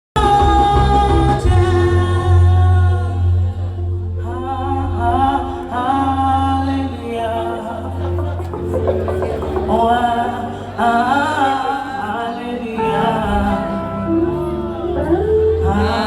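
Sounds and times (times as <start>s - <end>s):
steady low bass: 0.2s - 11.6s.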